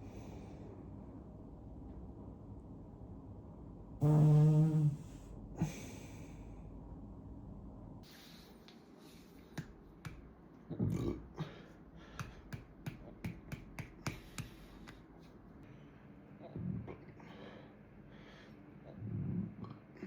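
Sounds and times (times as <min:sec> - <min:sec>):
person breathing: 0:05.6 - 0:06.7, 0:11.4 - 0:12.6, 0:14.1 - 0:15.0, 0:17.2 - 0:19.3.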